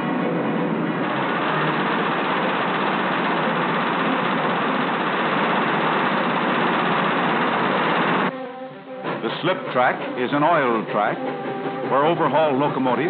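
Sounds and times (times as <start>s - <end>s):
heavy machinery running: 0.0s - 8.3s.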